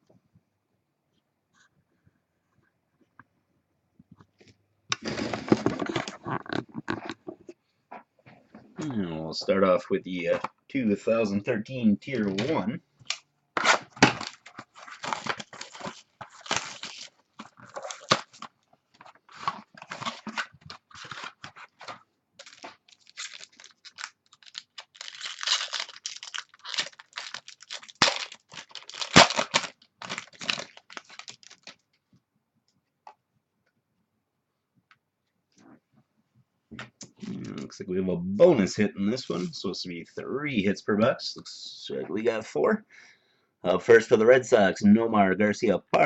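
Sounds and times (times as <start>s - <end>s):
plastic and cardboard tearing: 13.1s - 31.8s.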